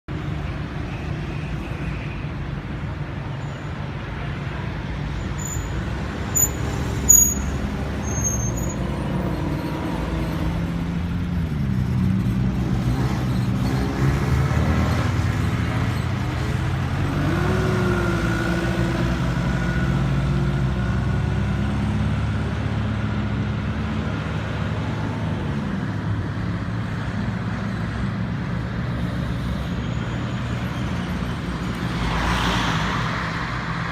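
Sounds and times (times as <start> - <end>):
road traffic engines: 0.0 - 33.9
short high squeaks: 6.4 - 8.9.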